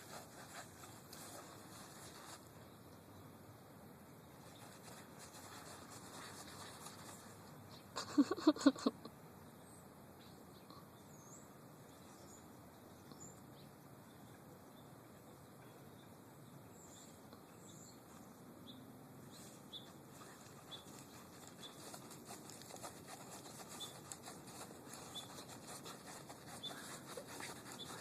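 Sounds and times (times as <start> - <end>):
paws digging in sand: 0.0 - 2.6, 4.4 - 7.6, 19.3 - 28.0.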